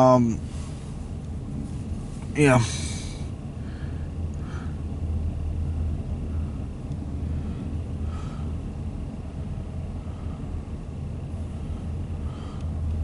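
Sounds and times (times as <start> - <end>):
low vehicle rumble: 0.0 - 13.0.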